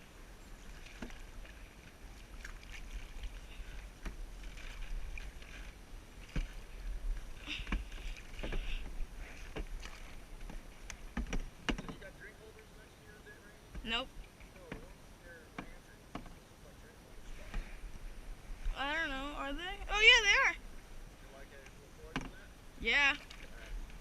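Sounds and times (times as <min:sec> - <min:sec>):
paddles splashing in water: 0:00.0 - 0:16.4, 0:17.2 - 0:24.0
paddle knocking canoe hull: 0:00.7 - 0:12.2, 0:13.7 - 0:16.4, 0:22.1 - 0:22.5.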